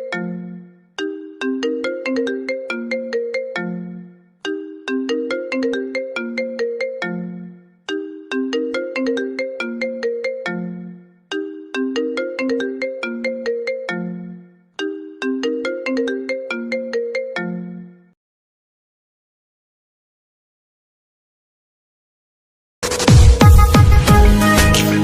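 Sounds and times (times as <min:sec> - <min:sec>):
smartphone ringtone melody: 0:00.0 - 0:18.2.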